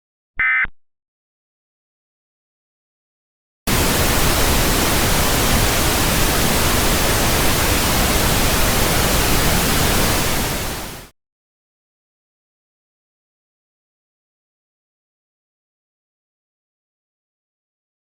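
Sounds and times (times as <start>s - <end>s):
radio static hiss: 3.7s - 11.1s.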